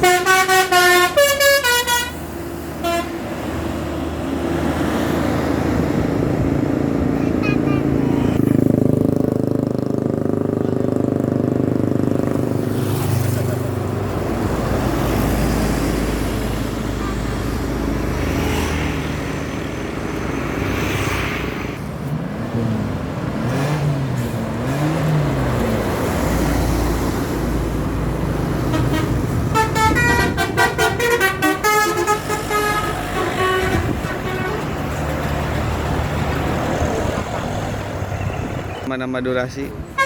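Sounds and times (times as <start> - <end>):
multi-tone bus horn: 0.0 - 3.3, 16.8 - 17.6, 28.6 - 34.9
bus engines: 0.0 - 40.0
road noise: 0.0 - 40.0
low horn tone rising and falling: 28.5 - 34.8.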